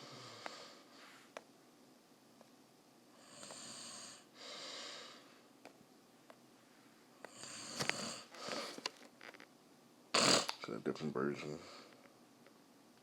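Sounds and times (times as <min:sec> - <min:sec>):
hissy breaths: 0:00.0 - 0:01.4, 0:03.2 - 0:05.5, 0:07.3 - 0:08.9.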